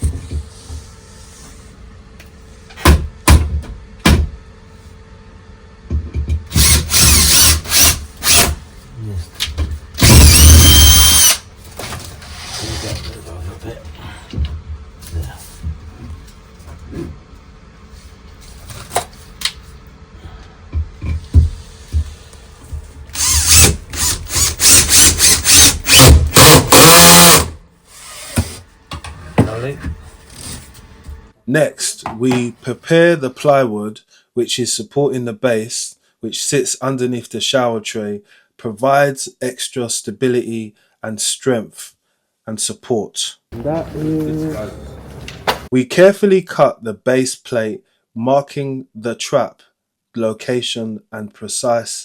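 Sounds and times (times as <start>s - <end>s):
power drill drilling: 6.5s - 8.6s, 10.0s - 11.4s, 23.1s - 28.6s.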